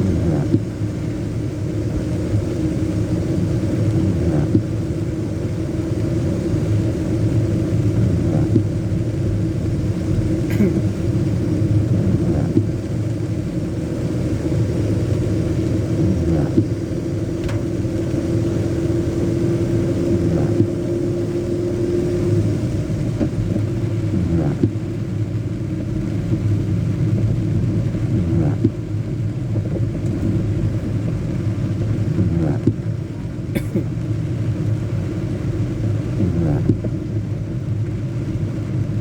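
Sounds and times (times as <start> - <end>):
heavy rain pouring: 0.0 - 39.0
raindrop taps: 0.0 - 39.0.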